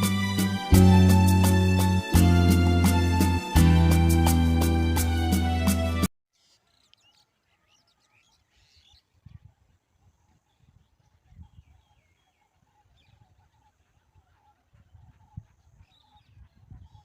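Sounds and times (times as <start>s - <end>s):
background music: 0.0s - 6.1s
faint bird chirps: 6.3s - 17.0s.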